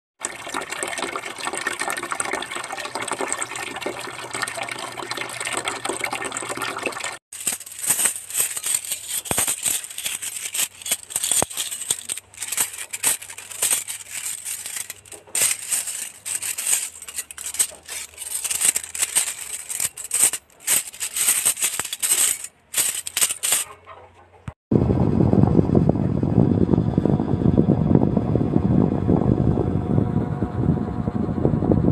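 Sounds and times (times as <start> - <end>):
dense even clatter: 7.3 - 23.8
quick clicks and rattles: 7.3 - 23.9.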